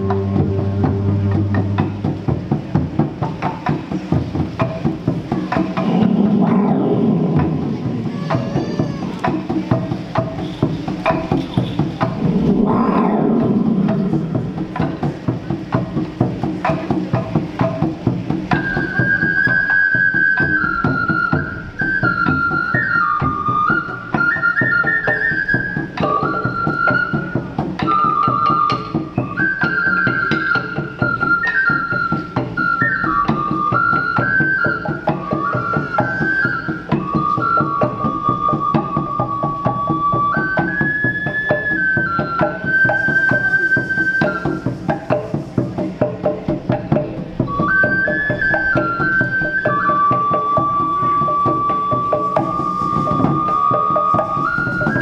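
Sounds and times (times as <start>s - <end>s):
high flute melody: 0.0s - 2.8s, 18.5s - 45.4s, 47.4s - 55.0s
fast hand-drumming: 0.0s - 55.0s.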